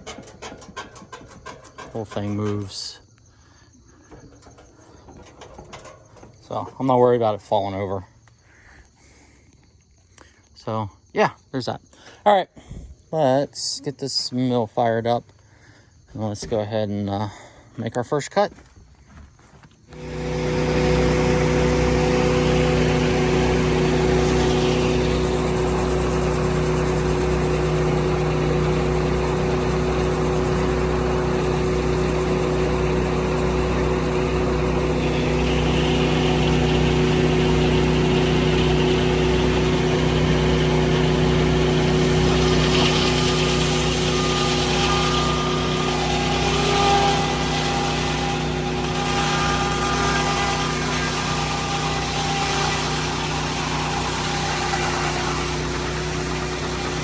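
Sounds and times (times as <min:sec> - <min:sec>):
sawmill engine running: 0:00.0 - 0:03.0, 0:04.0 - 0:07.5, 0:19.9 - 0:57.0.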